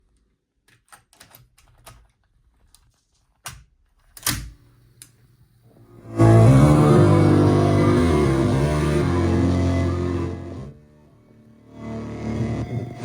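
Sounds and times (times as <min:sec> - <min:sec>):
music: 0:05.8 - 0:13.0.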